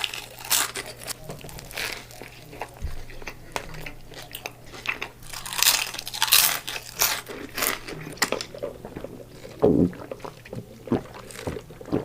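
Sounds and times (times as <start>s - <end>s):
crisp crunching bites: 0.0s - 2.8s, 3.6s - 8.6s
chewing: 0.0s - 12.0s.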